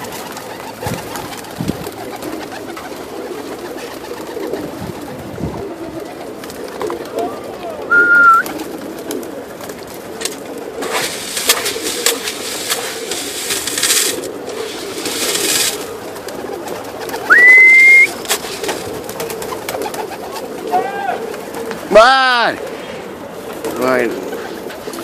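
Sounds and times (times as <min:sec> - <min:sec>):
pigeons cooing: 0:00.0 - 0:25.0
loud rising whistle: 0:07.9 - 0:08.4, 0:17.3 - 0:18.1
rustling noise: 0:10.2 - 0:16.0.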